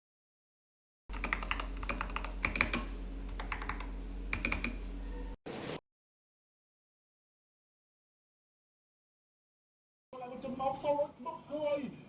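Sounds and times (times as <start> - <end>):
mechanical keyboard clicks: 1.1 - 4.8.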